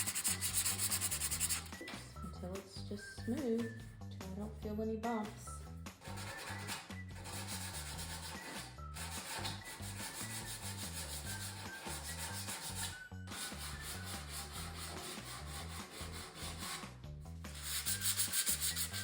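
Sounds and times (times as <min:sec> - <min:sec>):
sandpaper rubbing on wood: 0:00.0 - 0:01.8, 0:06.0 - 0:16.8, 0:17.6 - 0:19.0.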